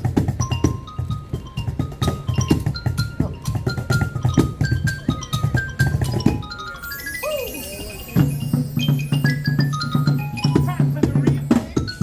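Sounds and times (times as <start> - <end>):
high-pitched melodic notes: 0.0 - 12.0.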